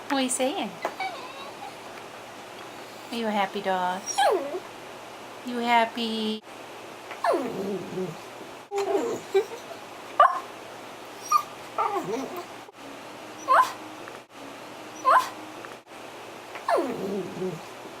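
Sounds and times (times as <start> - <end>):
dog whining and yipping: 0.8 - 1.9, 4.0 - 4.7, 7.2 - 10.4, 11.2 - 12.5, 13.4 - 13.8, 15.0 - 15.4, 16.6 - 17.6.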